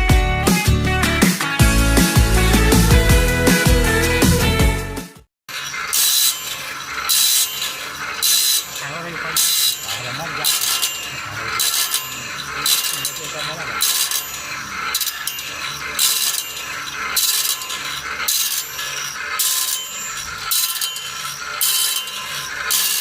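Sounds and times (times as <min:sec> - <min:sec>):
grinding wheel on saw blade: 0:01.1 - 0:04.6, 0:05.5 - 0:23.0
mechanical clicking: 0:05.5 - 0:23.0.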